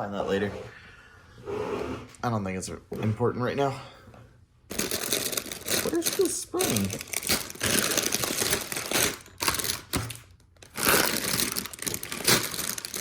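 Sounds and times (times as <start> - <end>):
plastic bags crinkling: 4.7 - 13.0.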